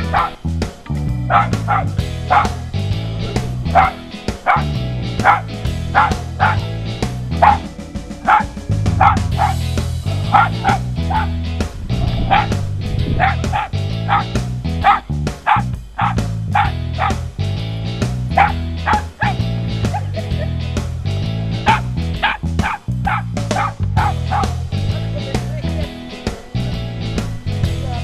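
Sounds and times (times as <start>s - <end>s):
dog yapping: 0.0s - 0.4s, 1.3s - 6.7s, 7.3s - 11.4s, 12.1s - 17.2s, 18.3s - 20.2s, 21.6s - 24.6s
background music: 0.0s - 28.0s.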